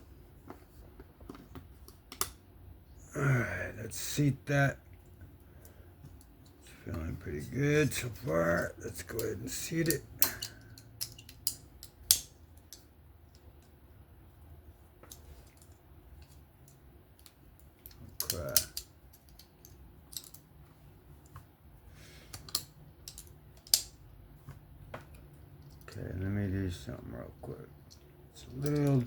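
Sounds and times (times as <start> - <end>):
light metal clicks and taps: 8.5 - 13.7, 15.0 - 20.5, 22.3 - 24.0, 27.5 - 29.0.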